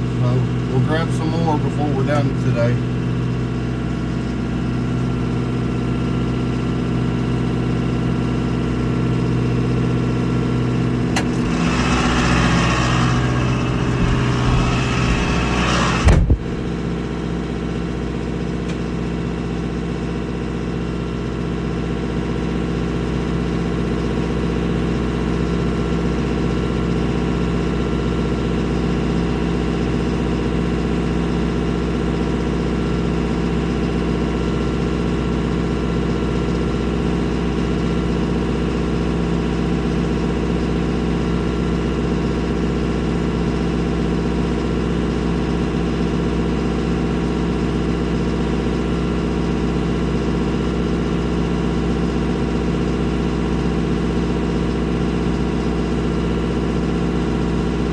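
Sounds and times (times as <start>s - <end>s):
vehicle engine running: 0.0s - 57.9s
sharp knock: 12.8s - 16.7s.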